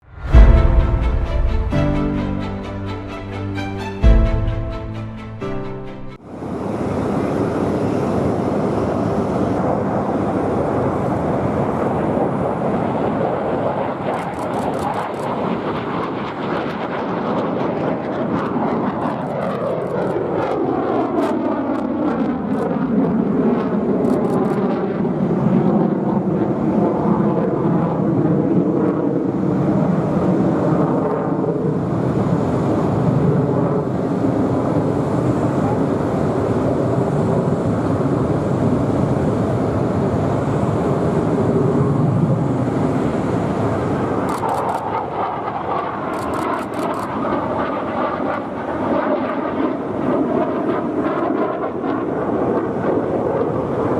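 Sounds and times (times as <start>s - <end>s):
jet fighter flying past: 4.9s - 53.9s.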